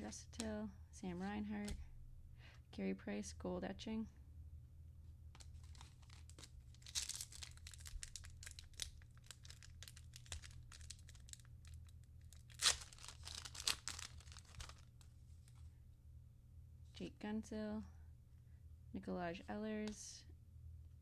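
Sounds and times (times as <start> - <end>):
wrapper tearing open: 5.4 - 15.1
wrapper crinkling: 5.4 - 15.6.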